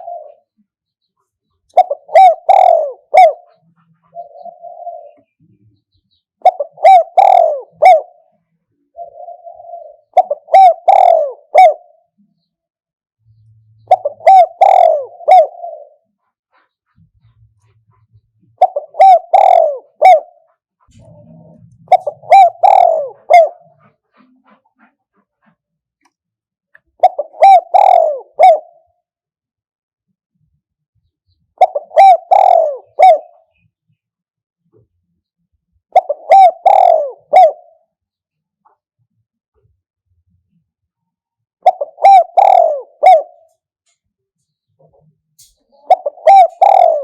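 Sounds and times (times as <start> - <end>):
dove cooing: 0.0 - 12.5, 13.7 - 25.7, 26.8 - 29.1, 31.5 - 33.8, 35.8 - 38.1, 41.6 - 47.0.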